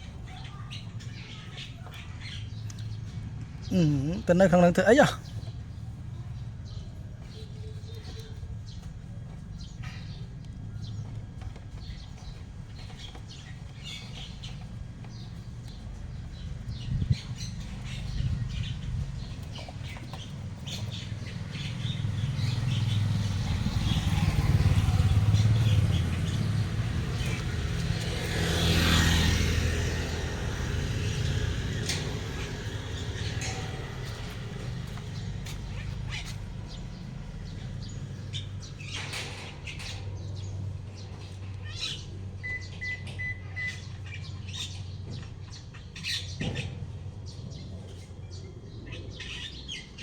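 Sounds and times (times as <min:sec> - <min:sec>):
vehicle engine rumble passing: 0:00.0 - 0:50.0
faint chirps and clicks: 0:01.5 - 0:03.5.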